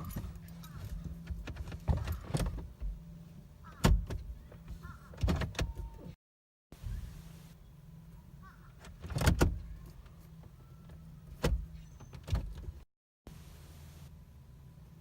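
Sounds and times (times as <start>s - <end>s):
car cabin hum: 0.0s - 6.2s.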